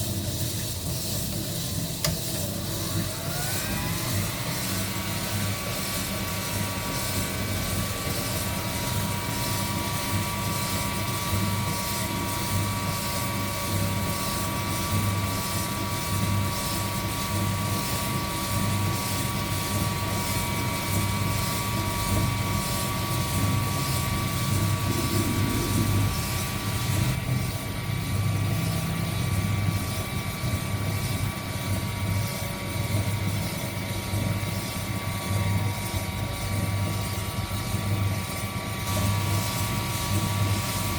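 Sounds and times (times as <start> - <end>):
heat gun blowing air: 0.0 - 27.8, 38.8 - 40.9.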